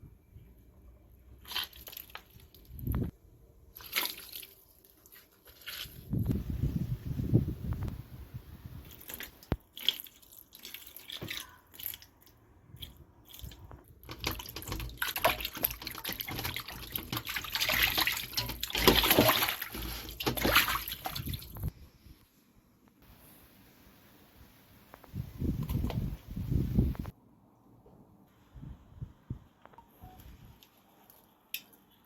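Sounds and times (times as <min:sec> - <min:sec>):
tap water splashing in sink: 0:14.0 - 0:21.7.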